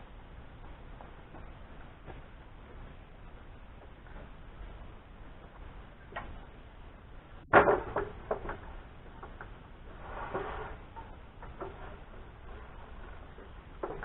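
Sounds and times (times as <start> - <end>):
lumber knocks and clatter: 7.5 - 9.5, 10.3 - 14.0.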